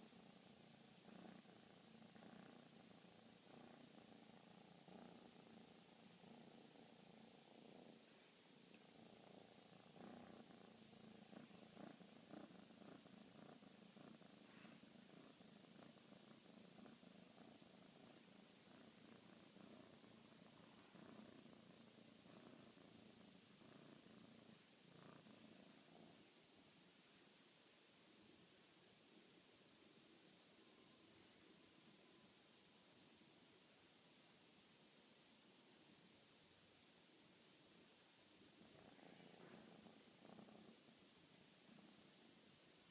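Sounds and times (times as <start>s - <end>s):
pet snoring softly: 0.0s - 26.7s, 38.4s - 42.9s.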